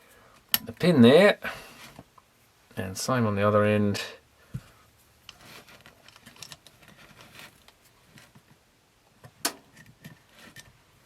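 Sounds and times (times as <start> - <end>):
screwdriver clicking and scraping: 5.3 - 7.8.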